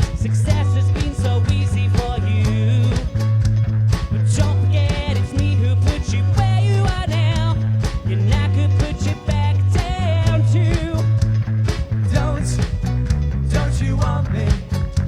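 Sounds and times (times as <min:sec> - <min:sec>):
bass line and beat: 0:00.0 - 0:15.0
strummed ukuleles: 0:00.0 - 0:15.0.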